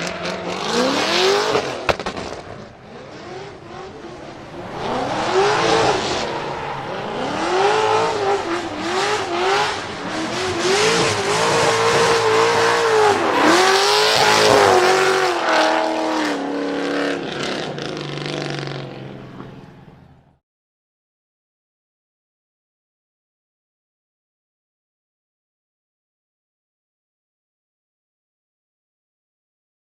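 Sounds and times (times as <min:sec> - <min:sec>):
engine revving hard: 0:00.0 - 0:19.0.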